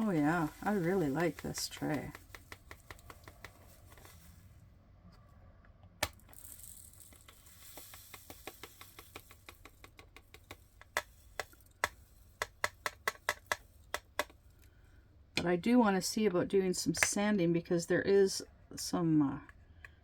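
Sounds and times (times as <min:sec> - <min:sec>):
sharp clicks of plastic beads: 0:00.0 - 0:04.3, 0:06.0 - 0:14.7
plastic beads rattling hiss: 0:00.0 - 0:04.6, 0:06.1 - 0:14.7.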